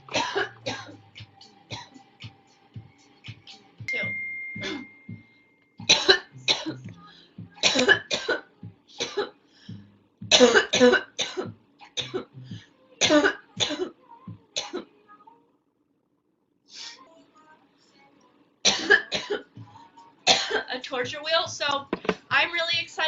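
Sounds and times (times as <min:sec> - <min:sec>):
girl coughing: 0:00.1 - 0:01.0, 0:04.6 - 0:04.9, 0:05.8 - 0:06.8, 0:07.6 - 0:09.3, 0:10.3 - 0:12.3, 0:13.0 - 0:14.0, 0:18.7 - 0:19.5, 0:20.3 - 0:20.7.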